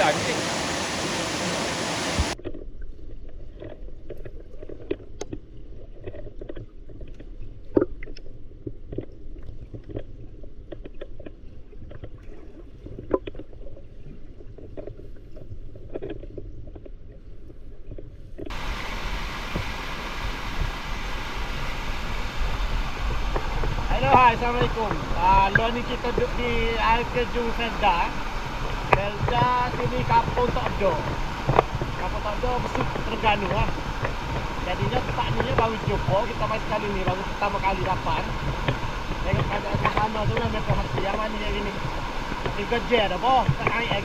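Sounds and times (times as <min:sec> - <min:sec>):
falling water: 0:00.0 - 0:02.4, 0:18.5 - 0:44.0
muffled underwater waterfall: 0:00.0 - 0:44.0
underwater clicks and knocks: 0:02.2 - 0:13.8, 0:22.0 - 0:44.0.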